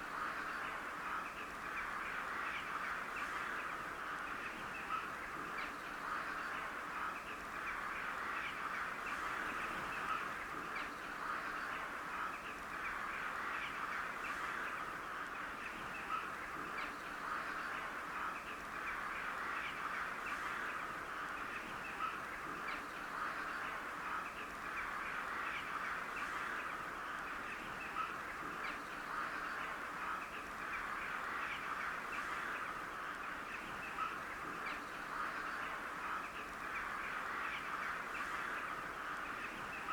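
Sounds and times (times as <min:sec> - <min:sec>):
flock of crows cawing: 0:06.1 - 0:16.4.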